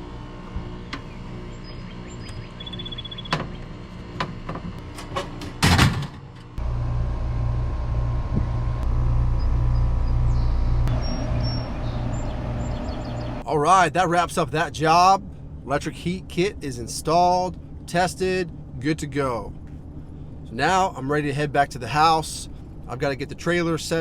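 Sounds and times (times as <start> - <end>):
steady mechanical hum: 0.0 - 24.0
throbbing low hum: 6.5 - 24.0.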